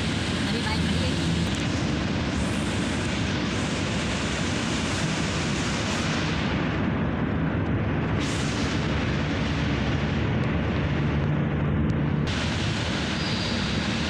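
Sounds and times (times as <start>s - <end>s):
vehicle road and engine rumble: 0.0s - 14.0s.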